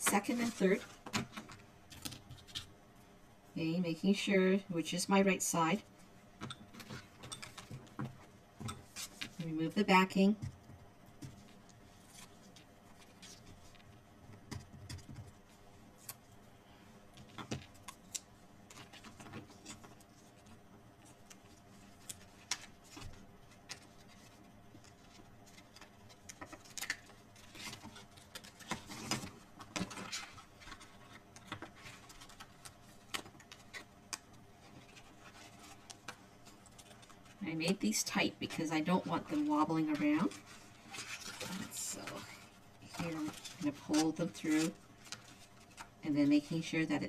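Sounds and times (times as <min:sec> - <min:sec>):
paper crinkling and rustling: 0:17.2 - 0:37.4, 0:38.5 - 0:46.7.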